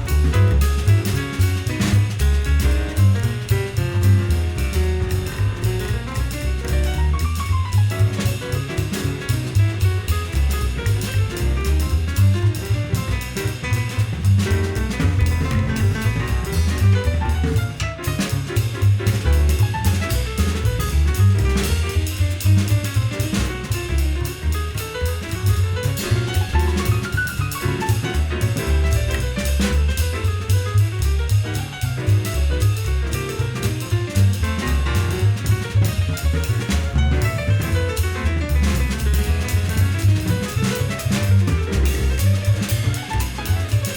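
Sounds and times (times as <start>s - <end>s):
double bass: 0.0s - 43.9s
drum kit: 0.0s - 43.9s
acoustic piano runs: 24.8s - 43.9s.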